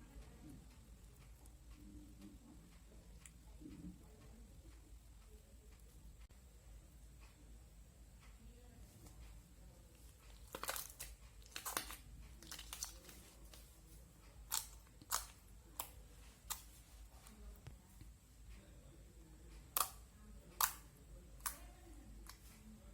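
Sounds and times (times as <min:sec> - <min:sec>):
slime popping and crackling: 0:10.4 - 0:13.3, 0:14.4 - 0:16.7.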